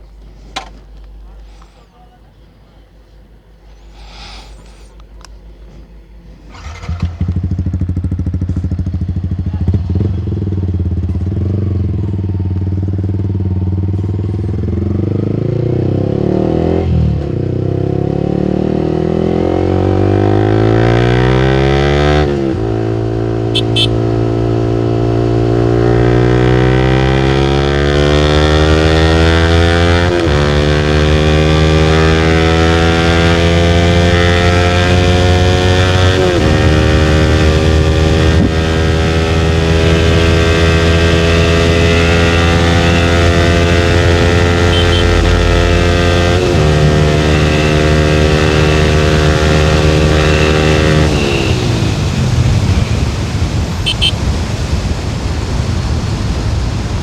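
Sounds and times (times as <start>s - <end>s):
motorcycle engine accelerating: 6.2s - 54.5s
wind rush: 51.4s - 57.0s.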